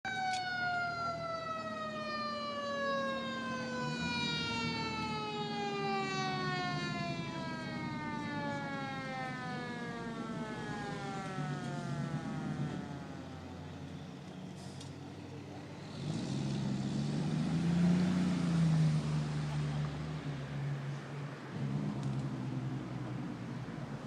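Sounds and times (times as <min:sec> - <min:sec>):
siren winding down: 0:00.1 - 0:14.0
engine running: 0:01.0 - 0:23.3.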